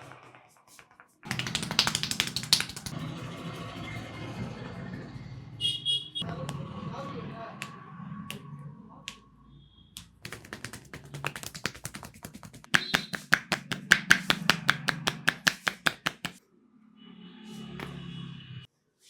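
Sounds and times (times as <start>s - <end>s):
hands chopping on a head: 1.3s - 3.0s, 10.2s - 16.4s.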